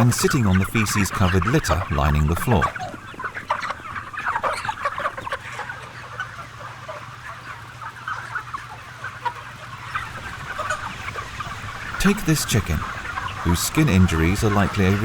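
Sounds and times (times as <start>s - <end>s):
chickens clucking and chirping: 0.0s - 15.0s.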